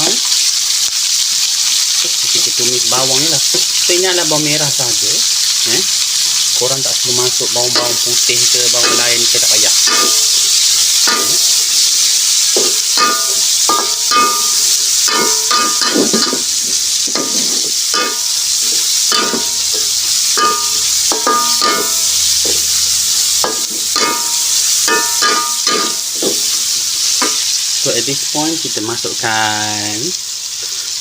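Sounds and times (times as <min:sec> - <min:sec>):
onions sizzling in oil: 0:00.0 - 0:31.0
spatula scraping and knocking pan: 0:07.7 - 0:22.7, 0:23.4 - 0:27.5.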